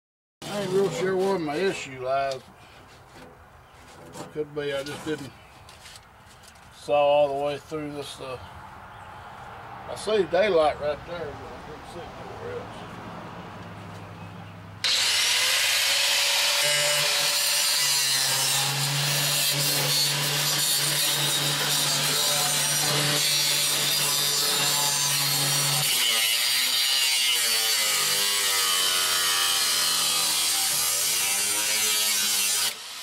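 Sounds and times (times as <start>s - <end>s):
power saw cutting sheet metal: 0.4s - 2.0s, 14.8s - 33.0s.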